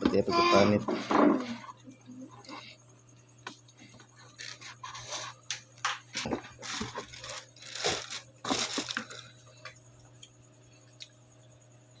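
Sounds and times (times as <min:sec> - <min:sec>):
tape crinkling and tearing: 0:06.6 - 0:09.2.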